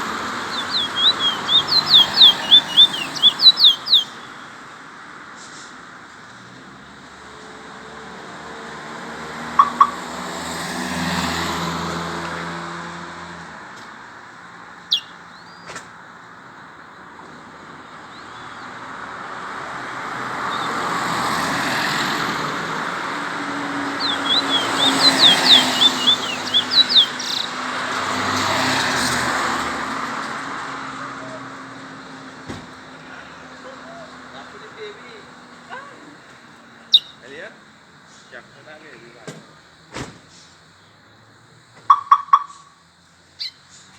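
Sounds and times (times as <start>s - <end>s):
road traffic passing: 0.0s - 43.9s
bird chirping: 0.4s - 4.4s, 14.8s - 15.7s, 23.8s - 27.6s, 36.8s - 37.2s, 43.4s - 43.9s.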